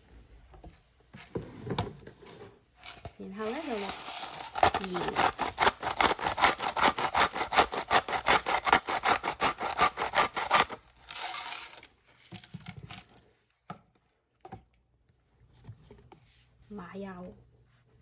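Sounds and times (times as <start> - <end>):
salt grinder rasping: 3.4 - 11.9.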